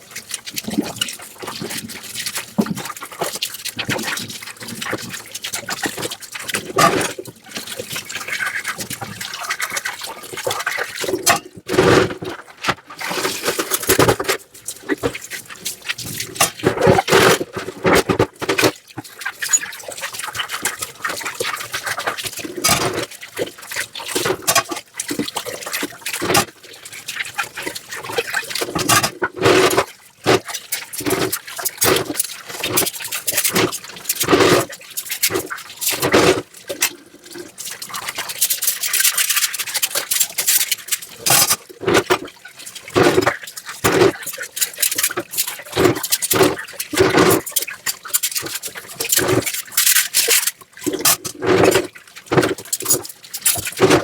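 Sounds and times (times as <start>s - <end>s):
running water: 0.0s - 54.0s
water splashing: 0.0s - 54.0s
scrubbing: 10.4s - 19.8s, 28.5s - 37.0s, 40.1s - 54.0s
dishes clinking: 11.2s - 11.6s.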